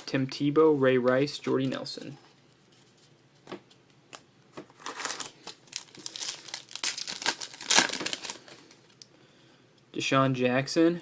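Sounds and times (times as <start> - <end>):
plastic wrapper tearing and crinkling: 4.8 - 9.0.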